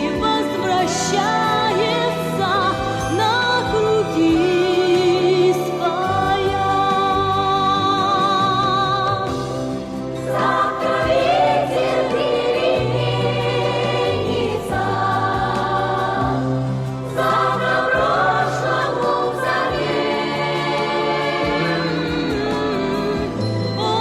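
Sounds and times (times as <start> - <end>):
choir singing sustained notes: 9.1 - 24.0.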